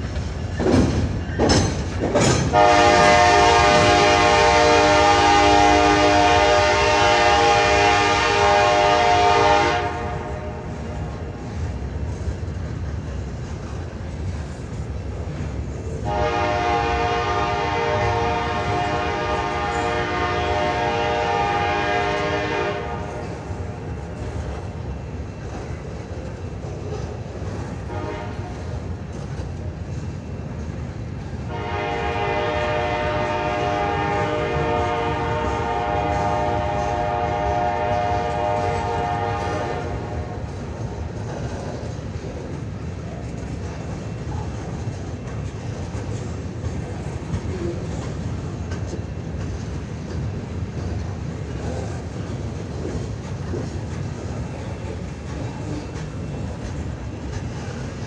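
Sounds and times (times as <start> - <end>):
train rumble and clatter on rails: 0.0 - 58.0
locomotive air horn: 2.5 - 11.4, 16.0 - 24.4, 27.8 - 28.7, 31.5 - 41.2.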